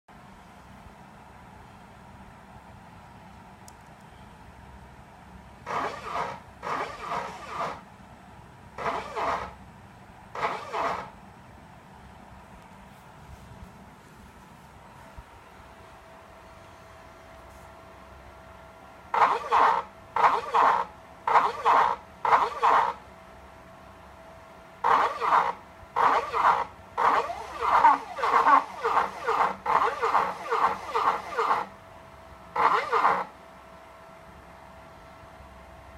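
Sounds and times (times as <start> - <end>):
stepper motors whining: 5.6 - 7.9, 8.8 - 9.6, 10.3 - 11.2, 19.1 - 23.0, 24.8 - 31.8, 32.5 - 33.3.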